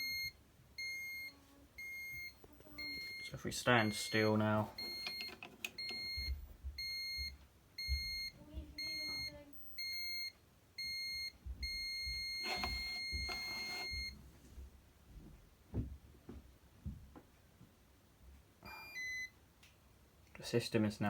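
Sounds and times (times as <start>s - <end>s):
short high alarm beeps: 0.0s - 14.1s
long steady alarm beep: 0.0s - 14.2s, 18.7s - 19.3s.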